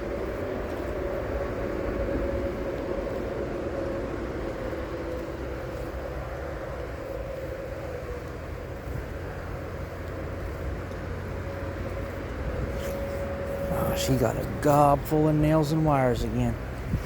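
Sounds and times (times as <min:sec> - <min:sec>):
faint engine hum: 0:00.0 - 0:17.0
traffic rumble: 0:00.0 - 0:17.0.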